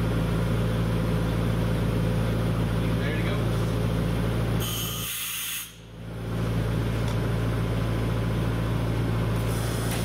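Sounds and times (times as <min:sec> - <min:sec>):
diesel air compressor running: 0:00.0 - 0:10.0.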